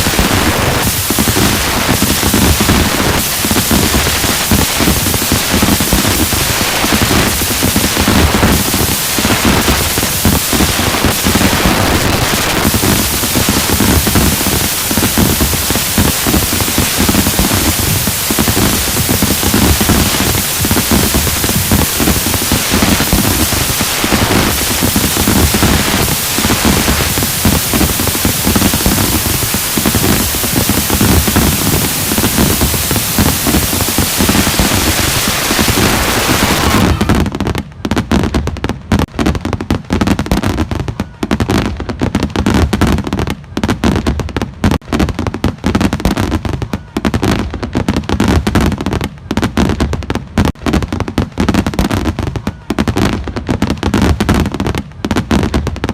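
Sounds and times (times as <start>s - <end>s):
fireworks hissing: 0.0s - 37.4s
fireworks bangs and crackles: 0.0s - 55.9s.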